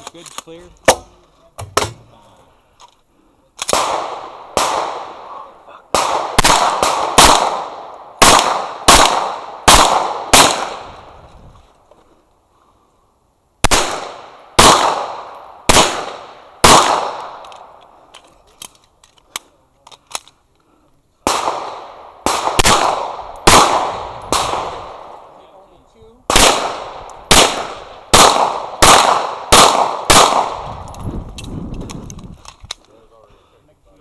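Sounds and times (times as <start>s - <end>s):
gunshots with echo: 3.7s - 11.0s, 13.7s - 17.4s, 21.2s - 25.4s, 26.3s - 30.9s.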